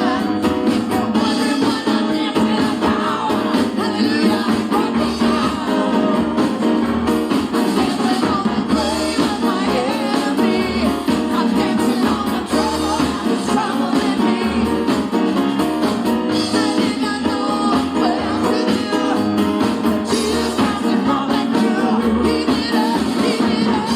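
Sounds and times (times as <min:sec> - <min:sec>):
group singing worship song: 0:00.0 - 0:23.9
live band playing: 0:00.0 - 0:23.9.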